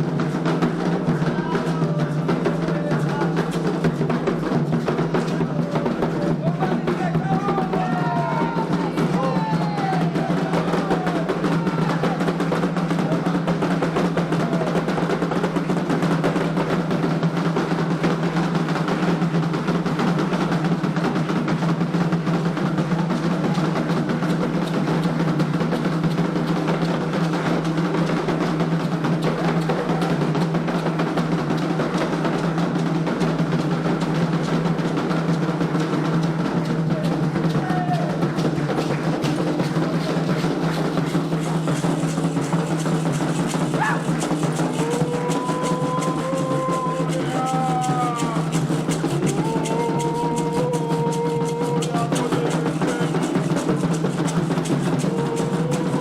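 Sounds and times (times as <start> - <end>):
hand drums playing fast rhythm: 0.0 - 56.0.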